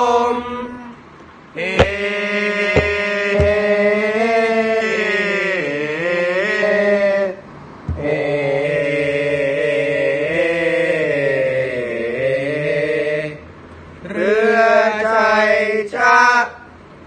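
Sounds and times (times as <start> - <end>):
chant with long sung notes: 0.0 - 16.6
low thump: 1.8 - 2.2, 2.8 - 3.6, 7.9 - 8.1.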